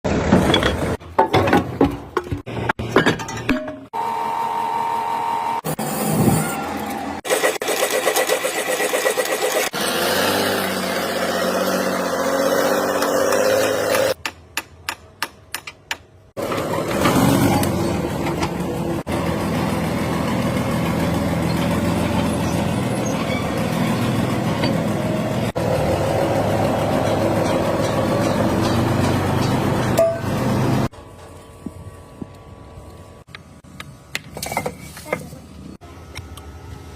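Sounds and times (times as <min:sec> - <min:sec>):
heavy equipment engine running: 0:16.4 - 0:33.6.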